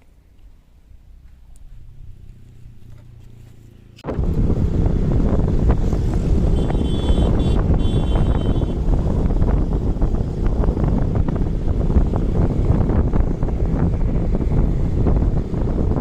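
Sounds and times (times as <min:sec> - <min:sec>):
wind buffeting microphone: 0:04.0 - 0:16.0.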